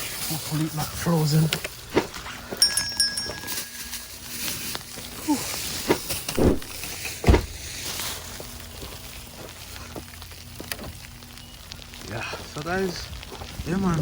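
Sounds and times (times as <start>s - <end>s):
knocks and thumps of car door: 7.2s - 7.6s.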